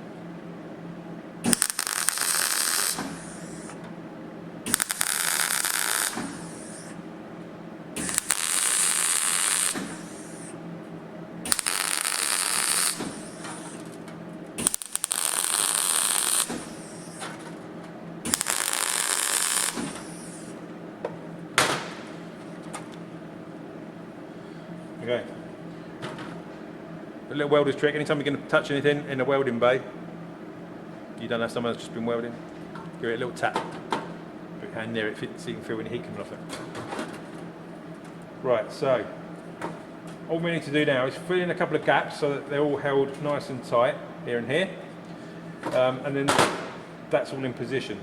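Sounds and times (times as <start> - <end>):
steady low hum: 0.0 - 48.0
welder crackling bursts: 1.4 - 3.8, 4.7 - 7.0, 8.0 - 10.6, 11.4 - 13.9, 14.5 - 17.4, 18.2 - 20.6.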